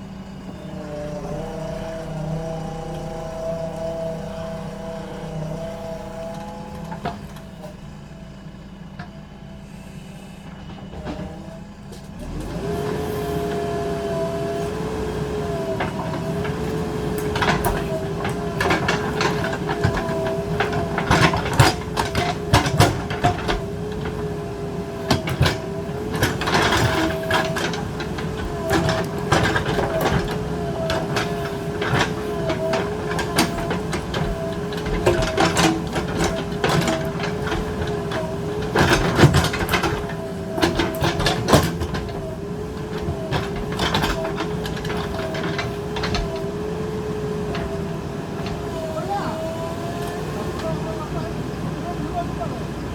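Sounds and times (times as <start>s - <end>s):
diesel engine and hydraulics whine: 0.0s - 52.9s
metallic clanks and knocks: 10.6s - 51.0s.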